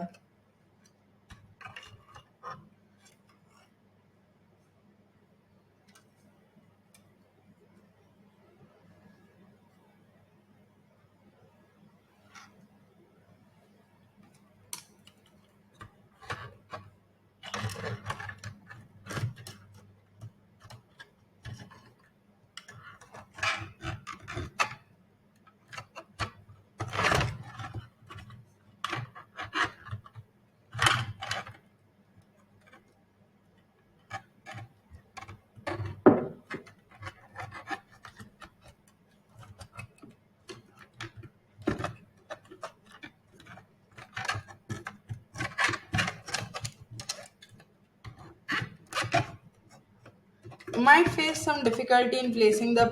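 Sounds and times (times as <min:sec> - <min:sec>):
clicks and knocks: 0:35.2 - 0:36.8.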